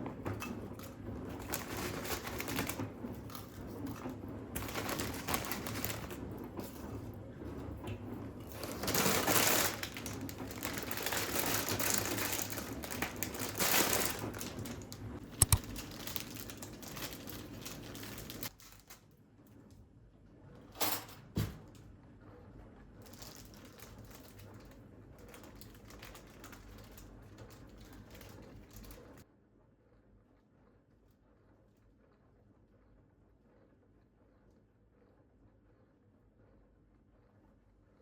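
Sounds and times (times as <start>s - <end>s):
packaging rustling: 0.3s - 7.0s, 8.4s - 19.1s, 23.0s - 29.2s.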